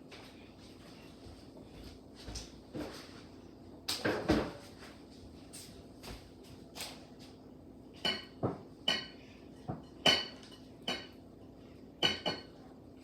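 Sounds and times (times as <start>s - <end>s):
utensils clinking against bowl: 8.0s - 11.2s, 12.0s - 12.6s.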